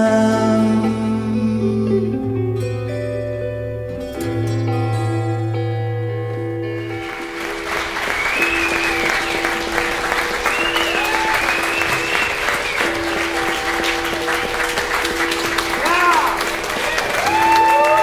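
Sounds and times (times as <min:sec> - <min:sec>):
live band chord ringing out: 0:02.6 - 0:17.1
sustained instrument notes: 0:03.9 - 0:17.0
audience applauding: 0:06.8 - 0:18.0
high whistle from crowd: 0:08.0 - 0:13.8.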